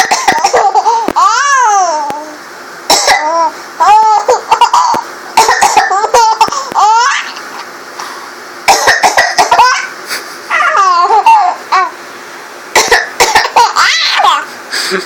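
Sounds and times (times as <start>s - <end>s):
baby laughing: 0.0s - 2.4s, 3.2s - 7.5s, 9.4s - 12.0s, 13.4s - 14.5s
woman coughing: 8.7s - 9.6s.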